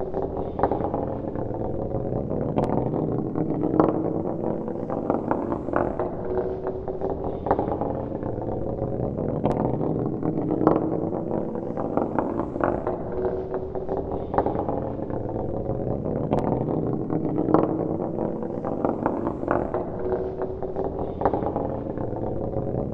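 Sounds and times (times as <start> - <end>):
metal ball rolling: 7.6 - 22.9.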